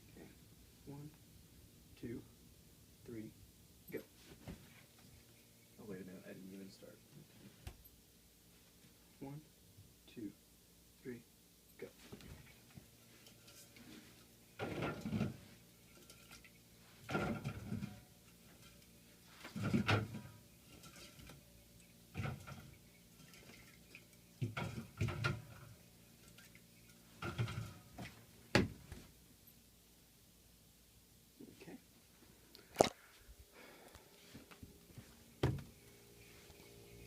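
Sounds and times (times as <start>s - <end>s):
drink cans knocking and clinking: 14.6s - 16.4s, 17.0s - 18.8s, 24.4s - 25.7s, 27.2s - 27.8s.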